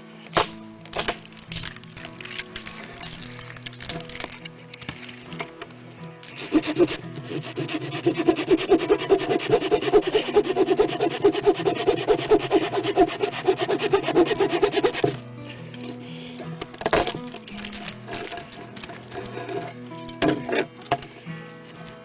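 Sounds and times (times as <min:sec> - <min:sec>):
hand saw rasping through wood: 0:06.2 - 0:15.2, 0:16.9 - 0:21.2.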